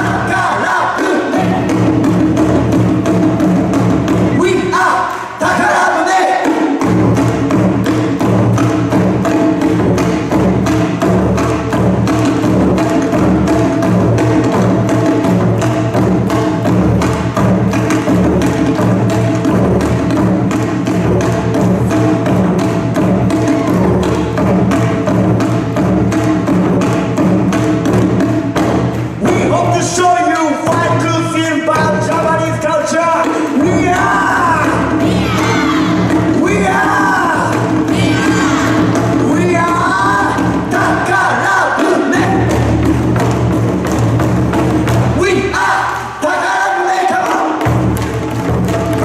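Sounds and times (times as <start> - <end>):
person singing or calling out: 0.0 - 1.7, 4.4 - 6.6, 33.1 - 42.5
dance music with fast percussion: 0.0 - 49.0.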